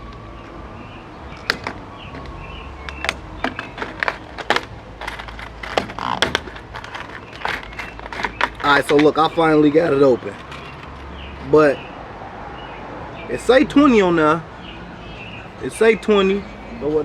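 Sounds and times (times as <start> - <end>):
plastic case clicking and snapping: 2.9 - 9.2.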